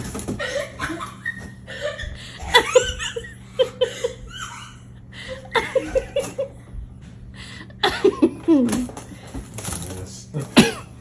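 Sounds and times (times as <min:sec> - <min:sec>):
person laughing: 0:00.4 - 0:06.6, 0:07.7 - 0:08.8.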